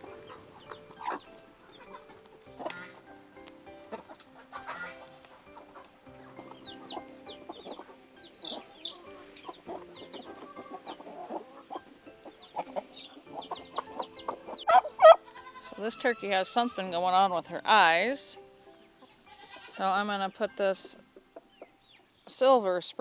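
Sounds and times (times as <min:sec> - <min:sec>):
poultry clucking: 0:00.0 - 0:22.4.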